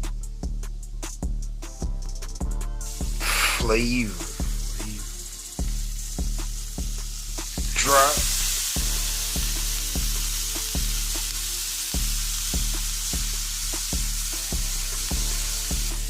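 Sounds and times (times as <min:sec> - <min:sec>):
background music with steady beat: 0:00.0 - 0:16.0
food sizzling in a frying pan: 0:02.8 - 0:16.0.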